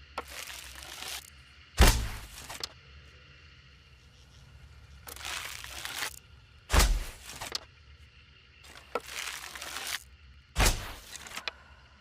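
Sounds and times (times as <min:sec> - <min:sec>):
bow shot thumps: 0:01.8 - 0:02.5, 0:10.6 - 0:11.1.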